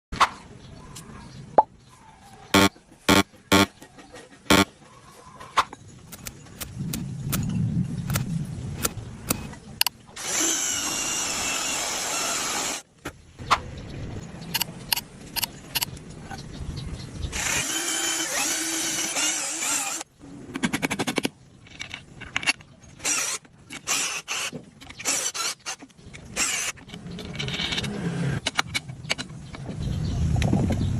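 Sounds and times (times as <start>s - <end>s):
power tool running: 2.6s - 3.7s, 10.2s - 12.8s.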